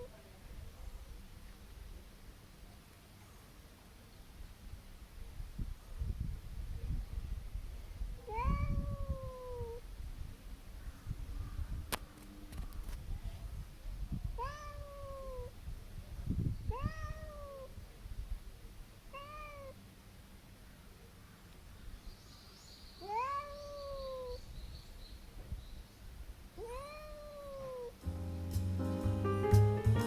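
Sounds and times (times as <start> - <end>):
cat yowling: 8.2 - 9.8, 14.4 - 15.5, 16.7 - 17.8, 19.1 - 19.8, 23.0 - 24.4, 26.6 - 28.0.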